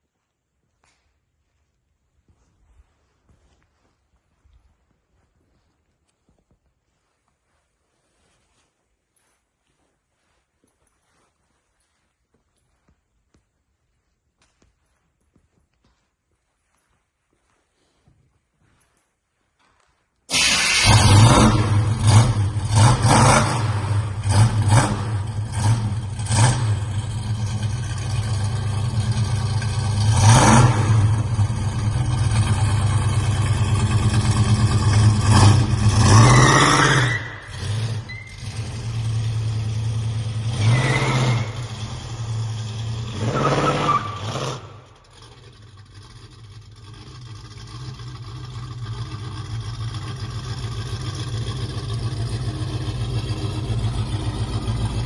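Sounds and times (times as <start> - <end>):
car engine revving: 20.3 - 55.0.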